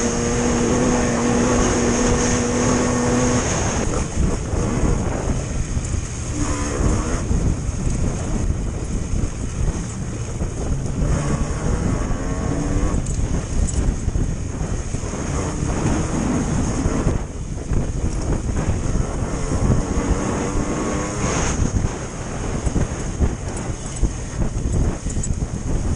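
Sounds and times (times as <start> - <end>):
motorcycle engine revving: 0.0 - 7.6, 9.7 - 13.9
wind rushing over microphone: 0.0 - 25.9.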